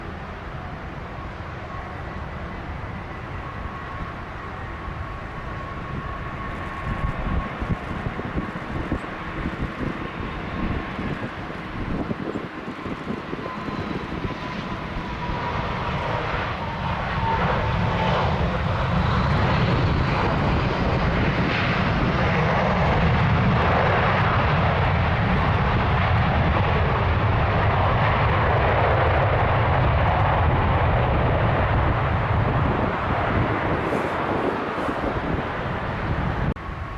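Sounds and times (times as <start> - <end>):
jet engine whine and roar: 0.0 - 36.9.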